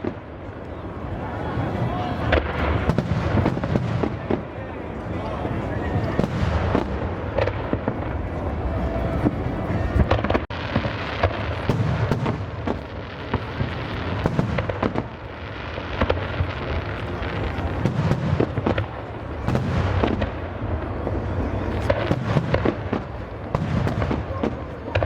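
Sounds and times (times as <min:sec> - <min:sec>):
fireworks bangs and crackles: 0:00.0 - 0:25.0.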